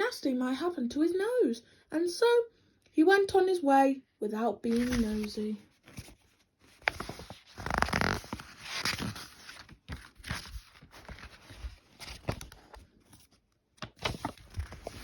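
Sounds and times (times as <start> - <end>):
paper rustling: 4.7 - 15.0.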